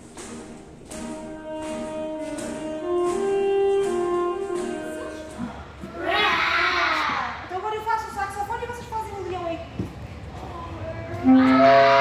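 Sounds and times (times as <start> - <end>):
saxophone playing held notes: 1.0 - 5.4, 11.2 - 12.0.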